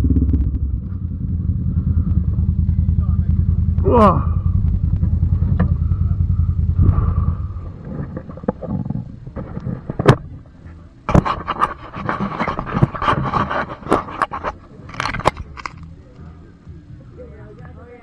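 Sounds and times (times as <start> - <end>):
atv engine idling: 0.0 - 11.0
scrapes knocks and clatters: 6.8 - 15.9.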